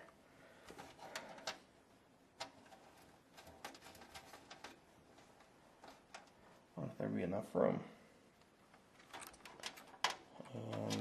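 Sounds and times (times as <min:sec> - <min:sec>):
clicks of computer parts handled: 0:09.0 - 0:10.2.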